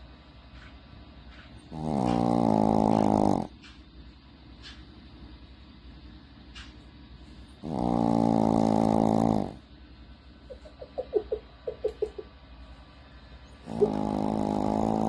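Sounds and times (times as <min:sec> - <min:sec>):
dog snoring: 0:01.6 - 0:03.7, 0:07.6 - 0:09.7, 0:13.6 - 0:15.0.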